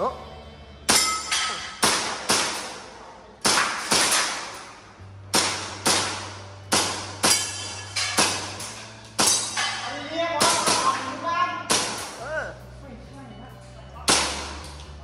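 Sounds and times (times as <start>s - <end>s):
airsoft pistol shots: 0.9s - 2.8s, 3.4s - 4.6s, 5.3s - 8.6s, 10.4s - 11.1s, 11.7s - 12.2s, 14.1s - 14.6s.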